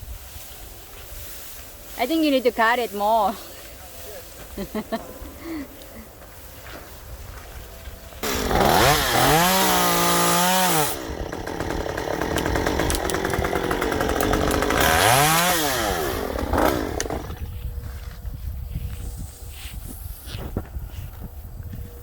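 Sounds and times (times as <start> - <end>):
chainsaw revving and cutting wood: 8.2 - 17.5.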